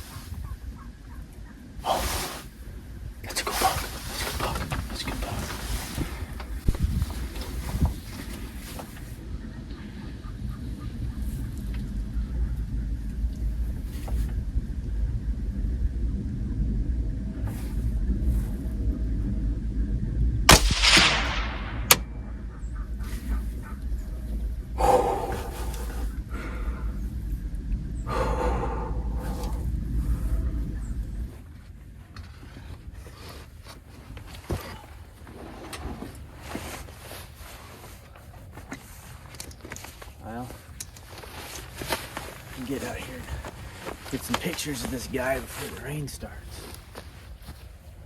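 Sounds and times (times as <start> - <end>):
wind buffeting microphone: 0.0 - 48.0
low rumble: 1.3 - 33.2
person breathing heavily: 1.8 - 2.6, 24.7 - 27.4, 28.0 - 30.7.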